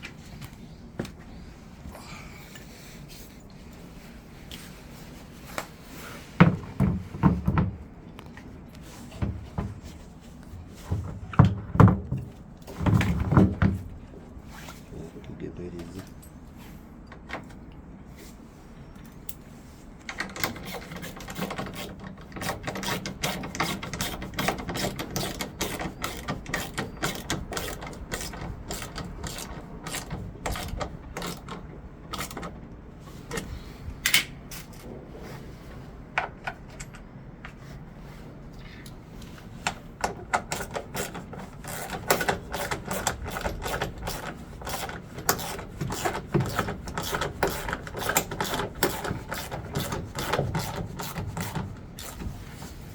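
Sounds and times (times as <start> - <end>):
mechanical clicking and clattering: 20.1 - 32.6, 39.6 - 52.2.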